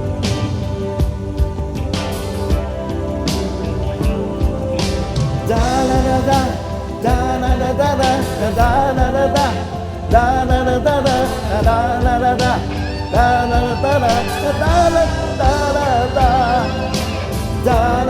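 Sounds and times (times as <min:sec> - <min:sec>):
band backing track with drum beat: 0:00.0 - 0:18.0
person singing: 0:05.5 - 0:18.0.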